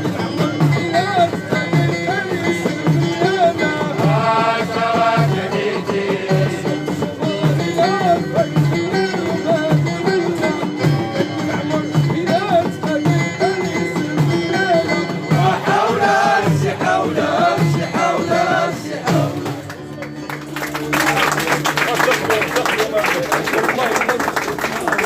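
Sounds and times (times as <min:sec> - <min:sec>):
sliding folk melody: 0:00.0 - 0:25.0
low drum beat: 0:11.3 - 0:19.6.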